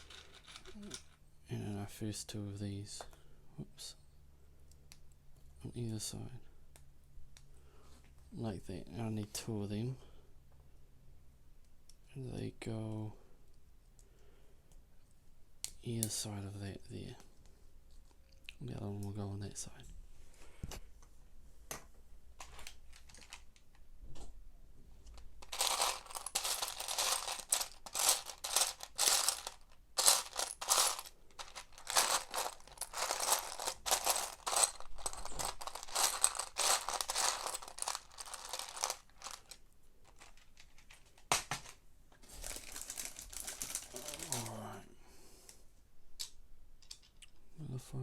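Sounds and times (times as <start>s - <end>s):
plastic pieces rattling in container: 0.0s - 1.2s, 22.4s - 23.5s, 25.1s - 41.7s, 42.4s - 44.5s.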